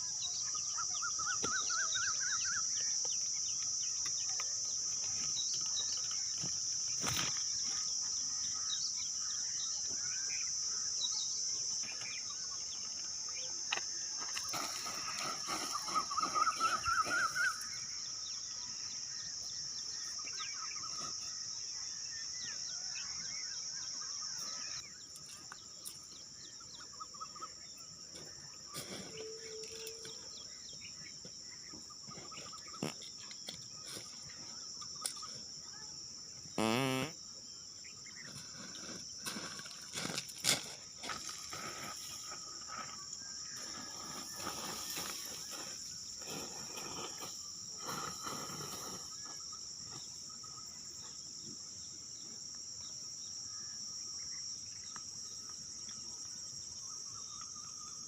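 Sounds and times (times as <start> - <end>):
bird chirps: 0.0 - 13.6, 14.2 - 27.8
crickets droning: 0.0 - 58.0.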